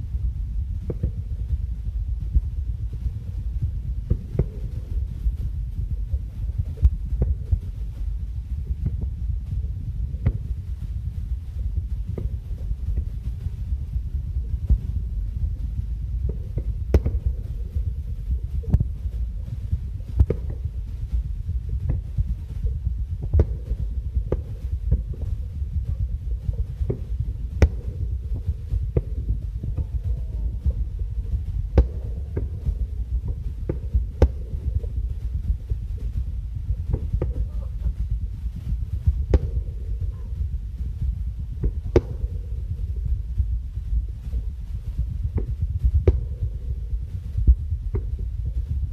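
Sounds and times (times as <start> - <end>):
low rumble: 0.0 - 48.9
fireworks booming and cracking: 0.6 - 48.9.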